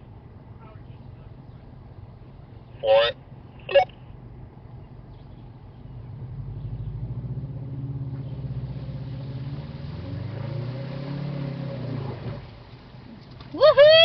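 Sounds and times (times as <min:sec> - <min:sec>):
off-road vehicle engine revving hard: 0:06.0 - 0:12.6.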